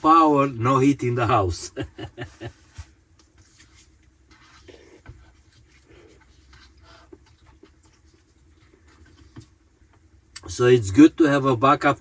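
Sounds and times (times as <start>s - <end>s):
diesel heater humming: 0.0s - 3.1s
rustling and scratching: 2.4s - 9.7s.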